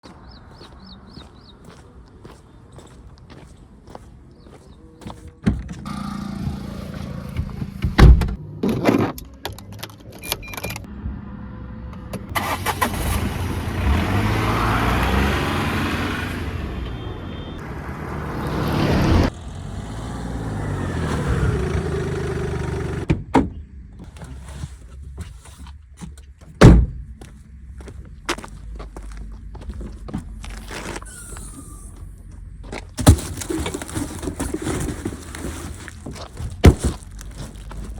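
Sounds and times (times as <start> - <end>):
engine revving: 5.9 - 7.9, 10.9 - 23.1.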